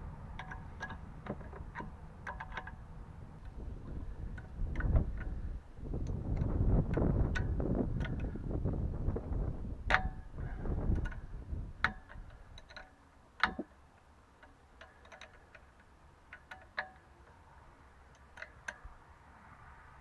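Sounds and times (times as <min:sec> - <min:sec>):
metallic clicks of tools: 0:00.3 - 0:08.4, 0:09.8 - 0:17.4, 0:18.0 - 0:19.0.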